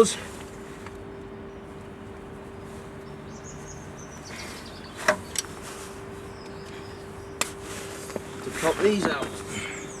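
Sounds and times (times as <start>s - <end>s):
faint steady hum: 0.0s - 10.0s
high bird chirps: 3.0s - 5.5s.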